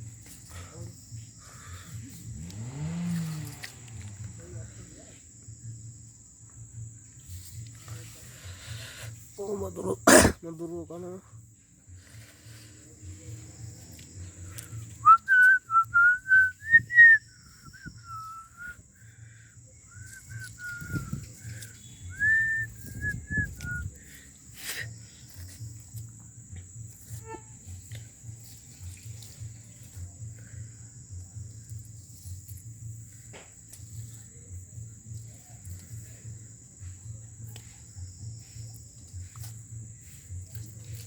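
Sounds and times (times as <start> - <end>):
high insect trill: 0.0 - 41.0
person whistling a tune: 15.0 - 18.8, 19.9 - 21.3, 22.1 - 24.0.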